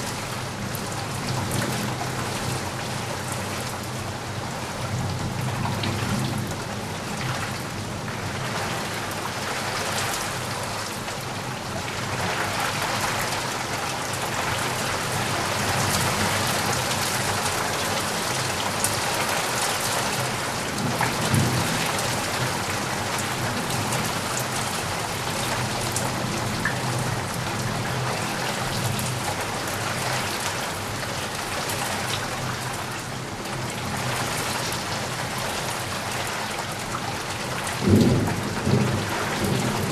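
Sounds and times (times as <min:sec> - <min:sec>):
heavy rain falling: 0:00.0 - 0:39.9
low rumble of thunder: 0:20.1 - 0:28.2, 0:37.6 - 0:39.9.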